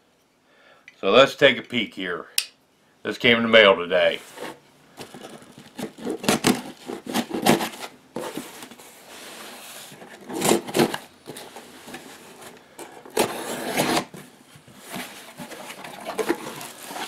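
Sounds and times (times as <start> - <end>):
cardboard rustling and scraping: 4.1 - 17.0.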